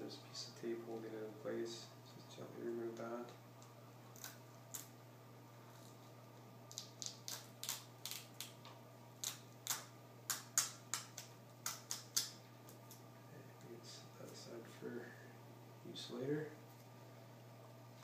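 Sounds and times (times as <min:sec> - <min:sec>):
adhesive tape being peeled: 0:06.7 - 0:08.6, 0:09.2 - 0:13.0.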